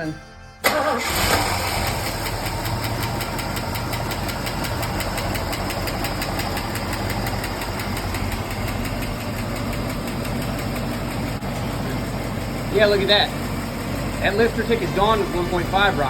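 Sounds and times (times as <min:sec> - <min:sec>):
engine idling: 0:00.6 - 0:16.0.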